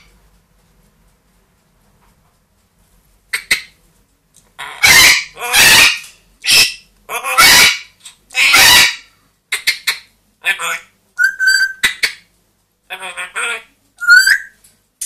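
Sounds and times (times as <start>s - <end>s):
parrot squawking: 3.3s - 3.8s, 4.6s - 12.3s, 12.9s - 14.6s.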